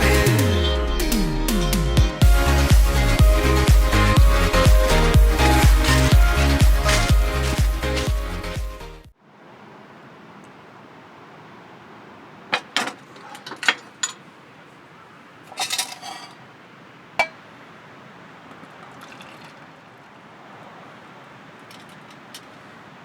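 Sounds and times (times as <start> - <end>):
steady rushing background: 2.2 - 9.0
small hard objects clinking: 3.0 - 8.6, 15.5 - 16.4.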